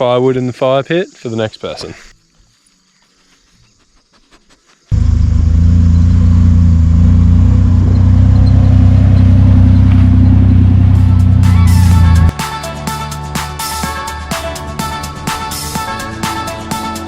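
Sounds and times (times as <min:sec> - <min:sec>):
car engine running: 0:04.9 - 0:12.3.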